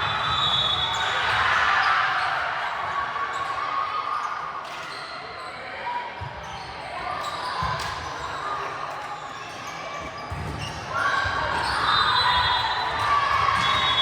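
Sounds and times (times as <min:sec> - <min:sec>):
echoing voices in a gym: 0:00.0 - 0:14.0.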